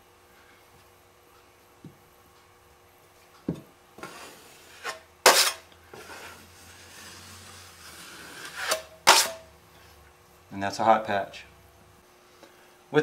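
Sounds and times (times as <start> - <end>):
metal knife scraping: 4.0 - 9.5.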